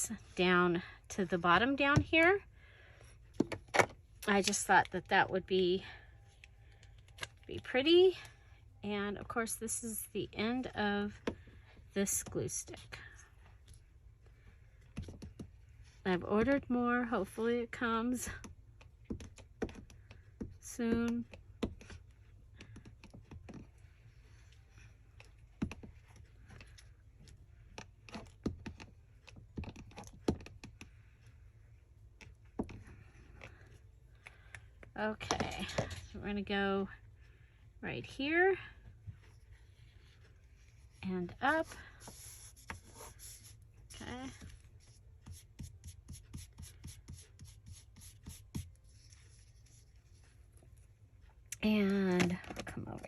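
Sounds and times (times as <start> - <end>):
paper rubbing: 39.5 - 50.4.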